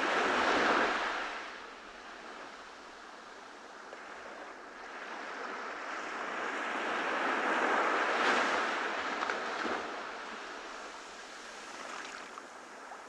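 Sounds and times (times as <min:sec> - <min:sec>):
ocean waves washing onto beach: 0:00.0 - 0:13.0.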